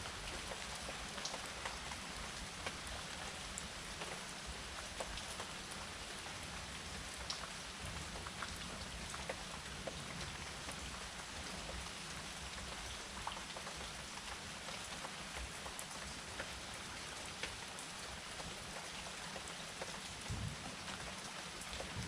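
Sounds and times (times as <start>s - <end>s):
steady rain hiss: 0.0s - 22.0s.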